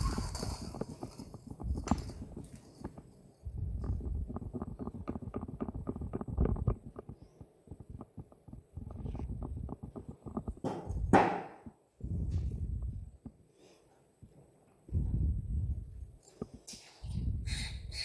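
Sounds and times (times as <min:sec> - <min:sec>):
coffee grinder crunching beans: 0:00.0 - 0:03.0.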